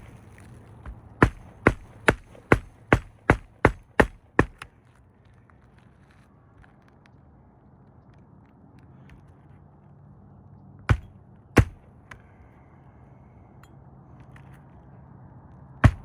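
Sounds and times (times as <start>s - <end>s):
hatchet striking nail: 1.2s - 4.7s, 10.9s - 11.9s.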